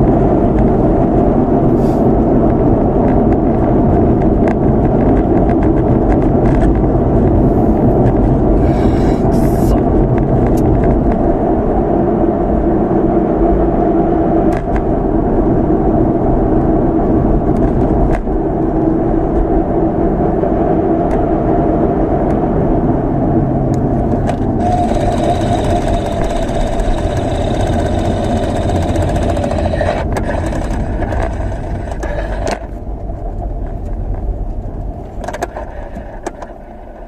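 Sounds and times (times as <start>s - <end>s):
car engine running: 0.0s - 11.5s, 23.7s - 36.7s
gearbox grinding noise: 23.9s - 34.3s.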